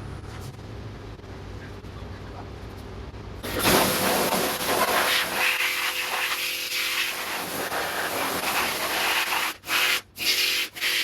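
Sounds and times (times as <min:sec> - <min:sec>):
pressure washer spraying water: 0:03.4 - 0:11.0.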